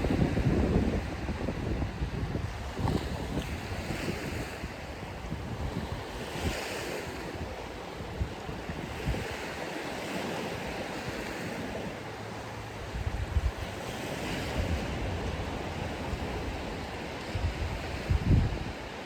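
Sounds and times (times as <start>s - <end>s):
surf washing onto beach: 0.0s - 19.0s
wind buffeting microphone: 0.0s - 19.0s.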